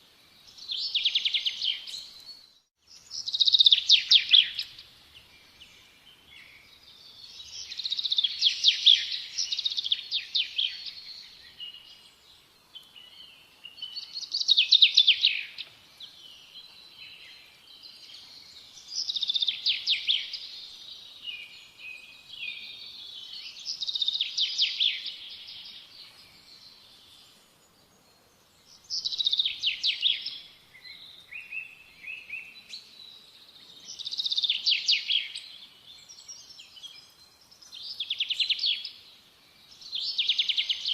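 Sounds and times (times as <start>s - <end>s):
quiet bird twittering: 0.0s - 40.9s
songbird singing trilled phrases: 0.4s - 28.0s, 28.6s - 40.9s.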